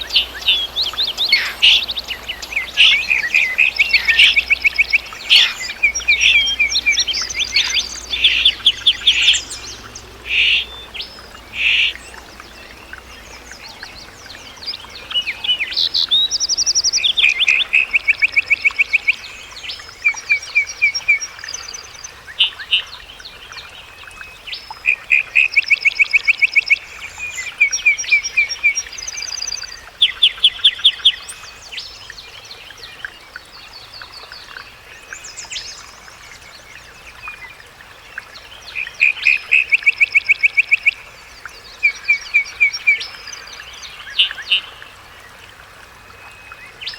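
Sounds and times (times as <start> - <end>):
songbirds singing trills and chirps: 0.0 - 46.9.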